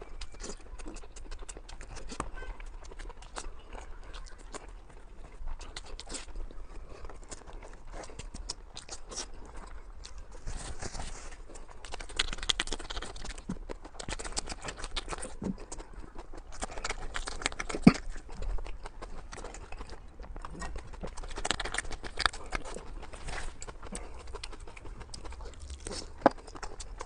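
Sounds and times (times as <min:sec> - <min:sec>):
wet mouth clicks and smacks: 0:00.0 - 0:03.5, 0:11.6 - 0:27.0
fast chewing: 0:00.0 - 0:27.0.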